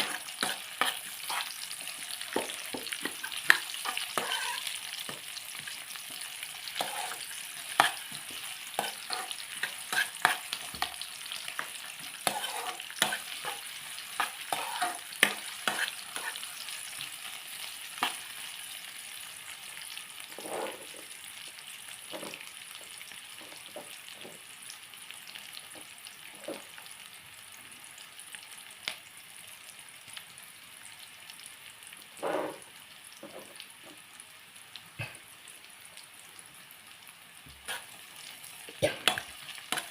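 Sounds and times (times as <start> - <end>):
food sizzling in oil: 0.0 - 39.9
utensil scraping pan: 2.4 - 4.8, 6.8 - 8.2, 8.8 - 10.9, 12.2 - 13.6, 14.2 - 16.4.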